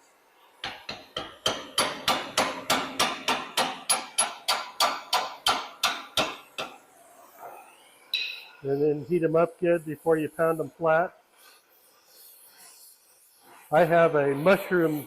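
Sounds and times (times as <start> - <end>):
hammer pounding hot steel rivet: 0.6 - 6.9.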